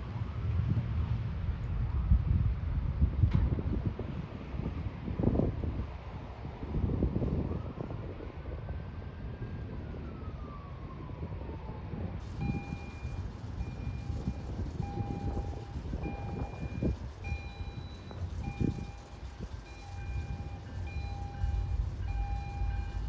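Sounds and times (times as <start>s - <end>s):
low rumble: 10.1s - 23.0s
electronic warning beeps: 12.3s - 23.0s.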